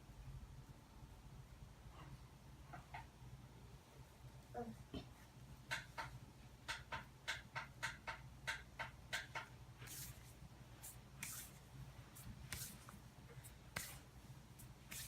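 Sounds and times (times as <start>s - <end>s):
hair rustling and rubbing: 9.8s - 15.0s.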